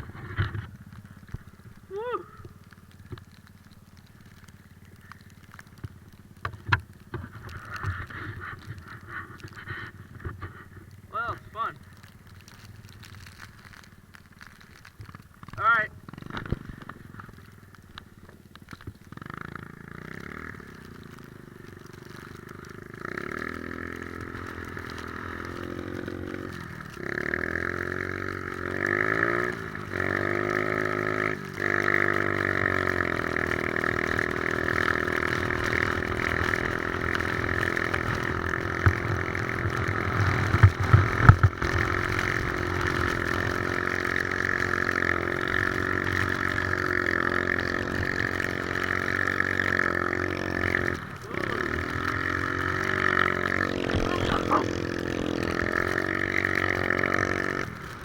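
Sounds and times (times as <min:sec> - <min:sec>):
atv engine accelerating: 0:00.0 - 0:58.0.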